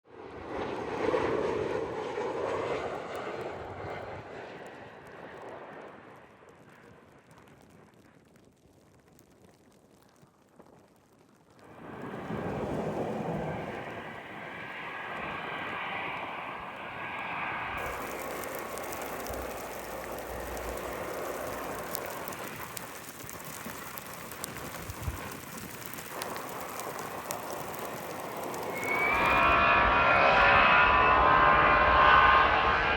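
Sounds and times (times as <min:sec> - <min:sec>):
jet engines running: 0:12.0 - 0:32.9
thin engine whine: 0:26.1 - 0:32.9.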